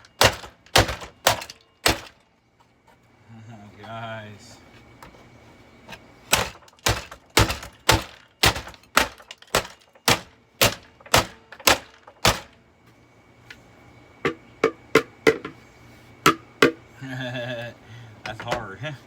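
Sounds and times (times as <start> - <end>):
hammer striking plastic: 0.0 - 2.2, 6.3 - 12.5.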